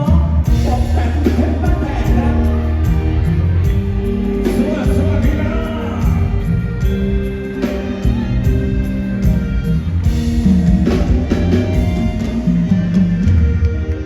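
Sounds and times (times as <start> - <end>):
person singing: 0.0 - 9.5
loud live band music: 0.0 - 14.0.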